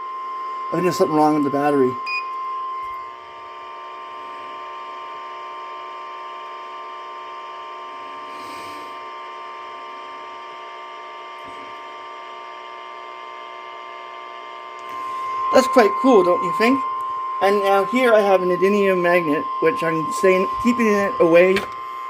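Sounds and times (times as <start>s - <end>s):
high-pitched electronic alarm tone: 0.0s - 6.3s, 12.4s - 22.0s.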